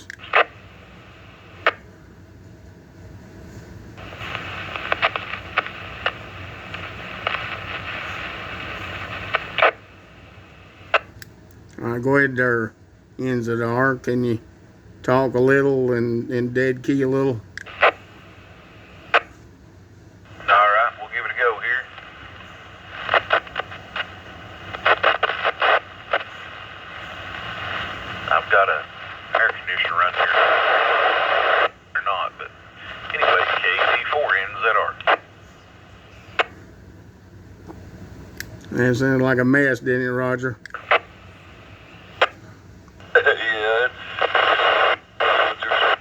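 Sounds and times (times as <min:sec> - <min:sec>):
radio pops and crackles: 0:00.0 - 0:01.9, 0:04.0 - 0:11.9, 0:17.5 - 0:19.5, 0:20.3 - 0:36.8, 0:40.3 - 0:46.0
radio carrier hiss: 0:00.0 - 0:02.2, 0:03.3 - 0:46.0
radio squelch closing: 0:04.0 - 0:09.8, 0:17.5 - 0:19.4, 0:20.3 - 0:36.7, 0:40.6 - 0:46.0.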